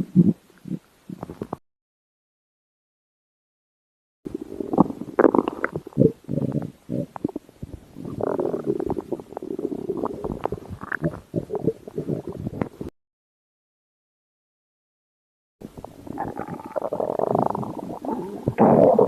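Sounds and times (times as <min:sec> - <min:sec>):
stomach growling: 0:00.0 - 0:01.6, 0:04.3 - 0:12.9, 0:15.6 - 0:19.0.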